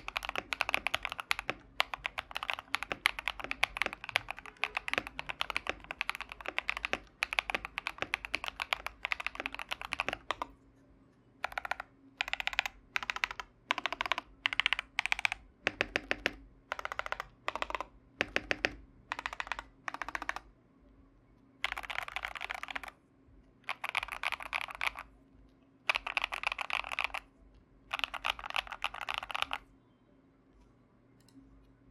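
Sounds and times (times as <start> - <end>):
mechanical keyboard typing: 0.0 - 10.5, 11.4 - 20.5, 21.6 - 23.0, 23.6 - 25.1, 25.9 - 27.3, 27.9 - 29.6.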